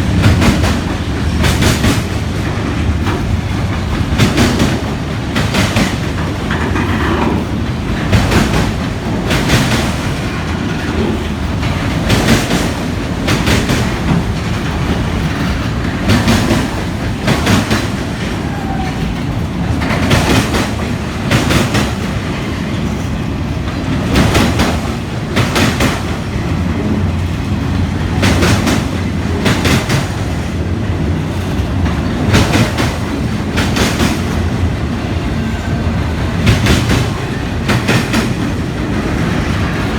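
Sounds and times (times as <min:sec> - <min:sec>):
freight train rumbling past: 0:00.0 - 0:39.9
wheels clicking over rail joint: 0:01.4 - 0:22.1.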